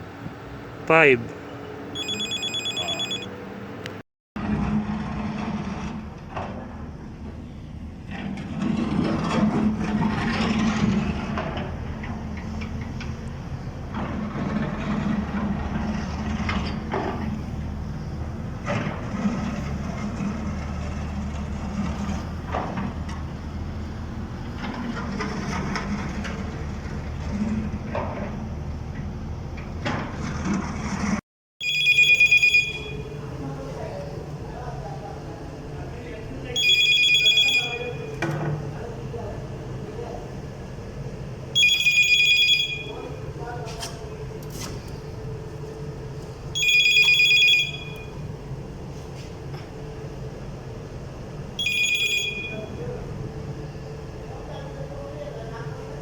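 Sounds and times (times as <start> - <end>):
low mechanical hum: 0.0 - 56.0
electronic telephone ringing: 2.0 - 3.3, 31.6 - 33.2, 36.6 - 38.1, 41.6 - 43.0, 46.6 - 48.2, 51.6 - 52.7.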